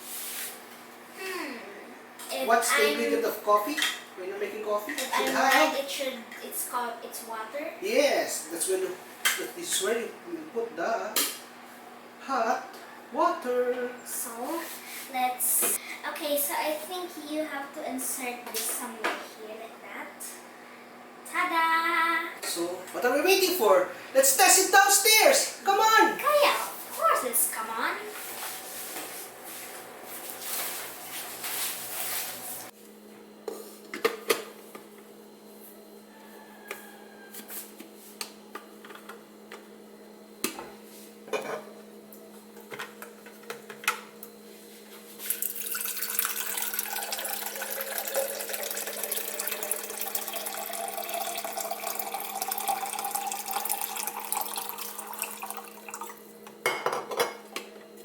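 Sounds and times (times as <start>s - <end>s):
dishes clinking: 41.3s - 41.7s, 56.6s - 57.5s
tap water filling a container: 45.2s - 56.2s.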